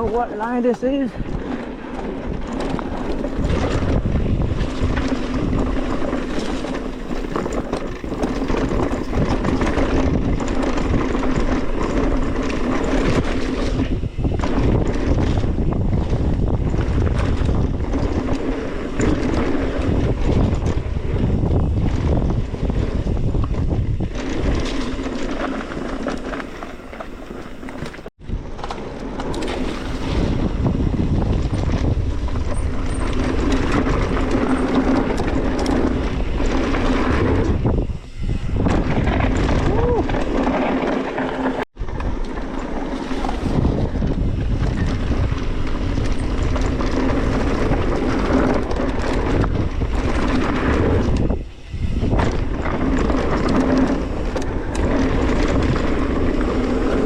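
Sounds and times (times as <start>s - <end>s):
bike rattling: 0.0s - 57.0s
bike tyres rushing on dirt: 0.0s - 57.0s
wind buffeting microphone: 0.0s - 57.0s.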